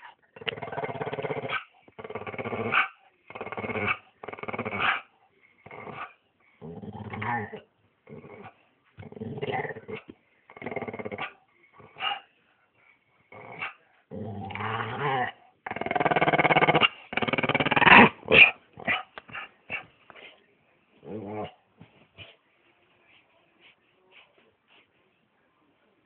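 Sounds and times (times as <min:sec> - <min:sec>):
dog growling: 0:00.4 - 0:12.0, 0:13.3 - 0:19.1, 0:21.0 - 0:21.6.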